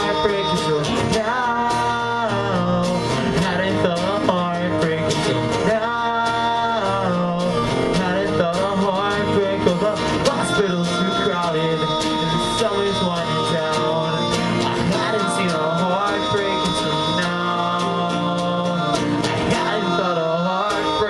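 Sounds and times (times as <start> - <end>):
person singing: 0.0 - 21.0
rock band playing live: 0.0 - 21.0
strummed guitar: 0.0 - 21.0.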